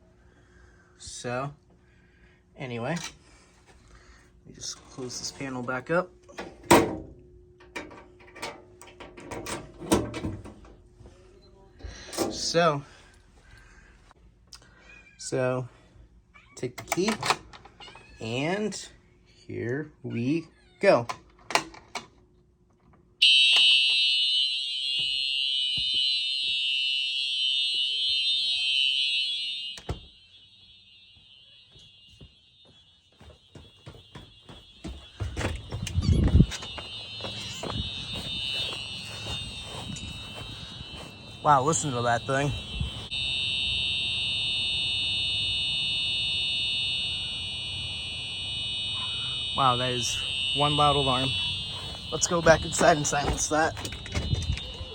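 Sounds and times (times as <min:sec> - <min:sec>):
continuous fire alarm horn: 0:04.6 - 0:06.1, 0:11.8 - 0:14.1, 0:23.2 - 0:54.9.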